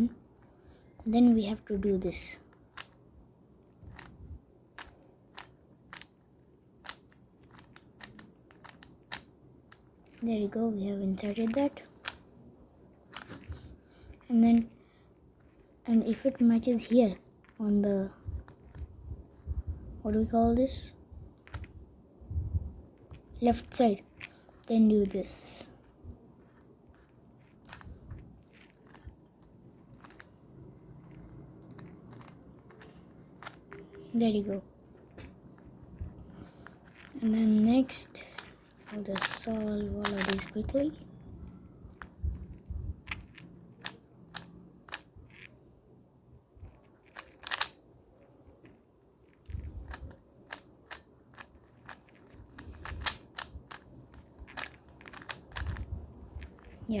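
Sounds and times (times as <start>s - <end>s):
plastic puzzle cube clicking: 1.7s - 3.0s, 3.7s - 10.5s, 11.1s - 12.3s, 13.0s - 14.8s, 15.4s - 19.5s, 21.4s - 21.8s, 23.0s - 41.2s, 41.8s - 45.6s, 46.6s - 57.0s
low rumble of handling: 17.4s - 33.8s, 34.5s - 45.6s.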